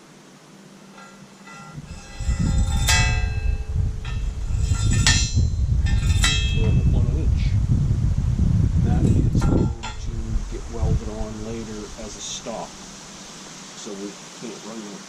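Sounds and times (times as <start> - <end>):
steel parts striking: 0.8 - 7.0, 9.0 - 10.1
low uneven rumble: 0.8 - 14.6.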